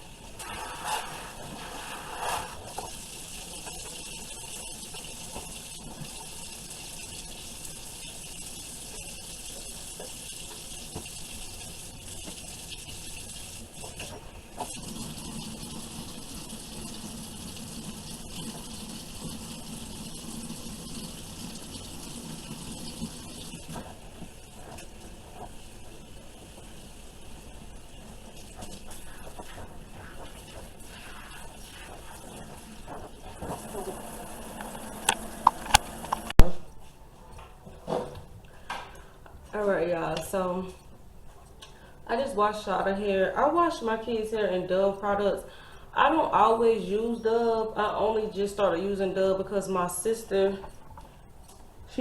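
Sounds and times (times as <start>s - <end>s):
tap water running: 0.0s - 36.4s.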